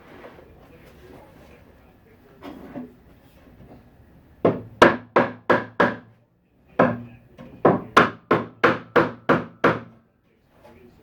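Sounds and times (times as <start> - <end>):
hammer striking wood: 4.4 - 6.2, 6.8 - 10.0.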